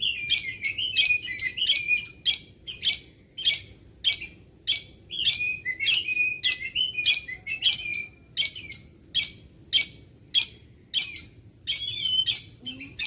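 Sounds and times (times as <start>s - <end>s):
lovebird shrill chirps: 0.0s - 13.0s.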